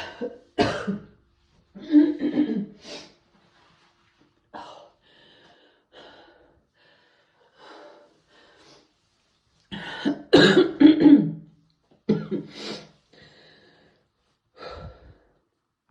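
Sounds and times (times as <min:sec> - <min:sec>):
person clearing throat: 0:00.0 - 0:01.1, 0:10.0 - 0:11.4, 0:12.1 - 0:12.5
person coughing: 0:00.0 - 0:01.2, 0:01.8 - 0:02.8, 0:09.7 - 0:11.4, 0:12.1 - 0:12.7.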